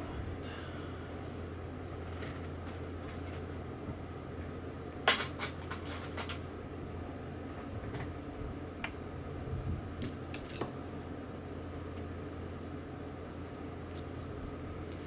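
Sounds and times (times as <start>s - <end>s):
steady low hum: 0.0s - 5.2s
small reel parts clicking: 13.9s - 15.0s.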